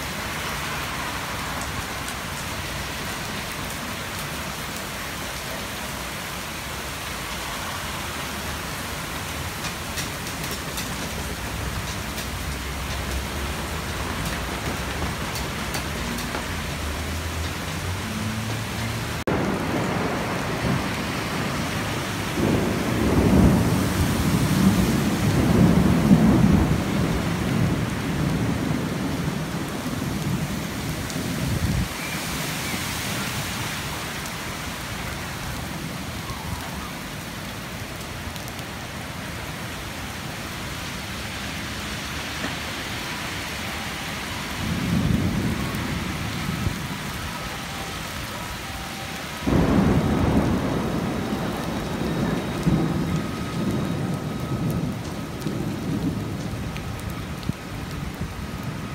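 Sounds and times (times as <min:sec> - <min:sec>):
heavy rain hissing: 0:00.0 - 0:58.9
thunder rumbling: 0:08.2 - 0:38.5, 0:44.2 - 0:58.9.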